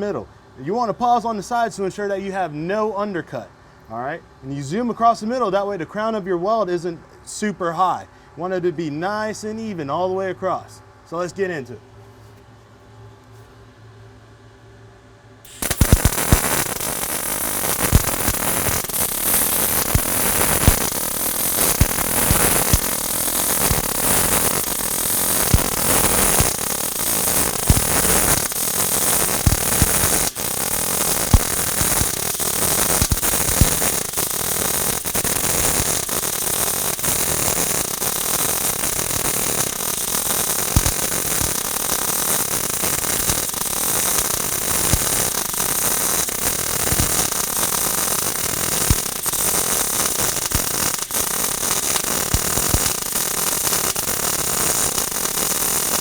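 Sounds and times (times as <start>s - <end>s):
welding arc crackling hiss: 15.5s - 56.0s
welding arc sharp pops: 15.5s - 56.0s.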